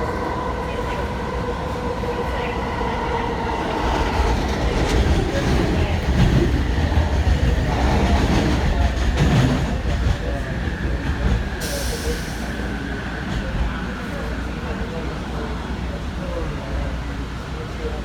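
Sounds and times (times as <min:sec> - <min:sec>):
train car rumbling: 0:00.0 - 0:18.0.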